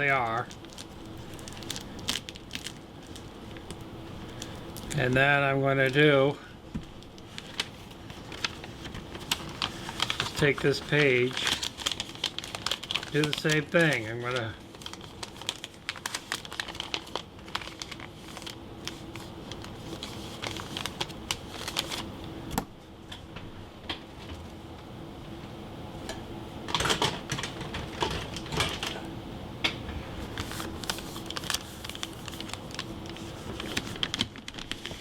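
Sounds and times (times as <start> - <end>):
faint steady hum: 0.0 - 35.0
paper and tape handling: 6.9 - 22.6, 30.3 - 35.0.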